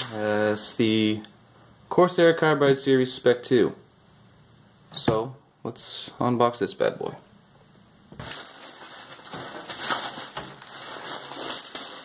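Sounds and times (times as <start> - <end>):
cardboard box rustling and crinkling: 8.2 - 12.0.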